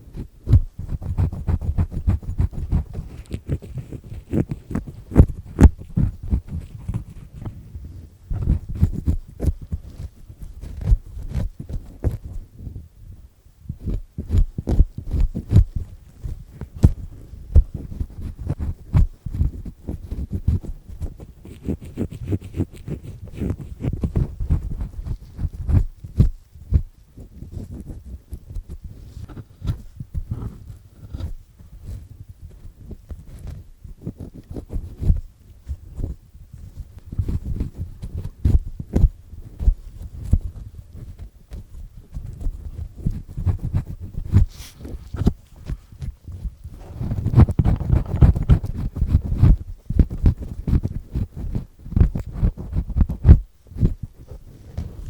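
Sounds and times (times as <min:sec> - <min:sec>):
ear pick scraping inside ear: 0:00.0 - 0:12.4, 0:13.7 - 0:55.0.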